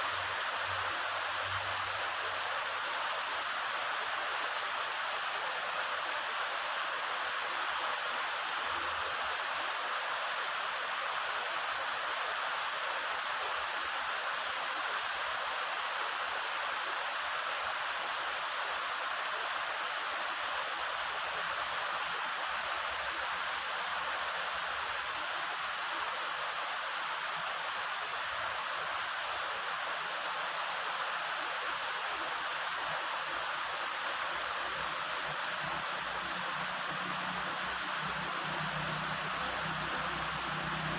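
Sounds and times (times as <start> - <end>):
heavy rain hissing: 0.0 - 40.9.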